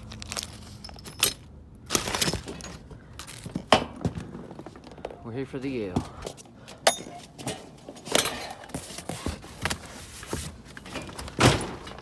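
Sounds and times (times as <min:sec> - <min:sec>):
cardboard boxes knocking and rustling: 0:01.9 - 0:05.2, 0:07.2 - 0:12.0.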